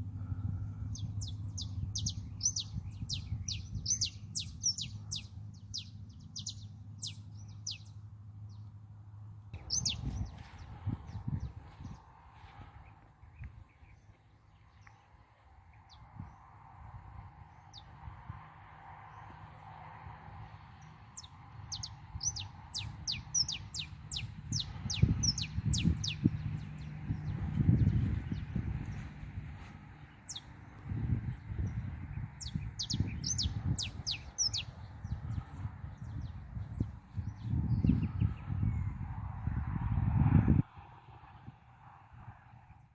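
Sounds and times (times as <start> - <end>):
birds chirping: 0.0 - 8.8, 9.6 - 12.1, 20.8 - 39.0.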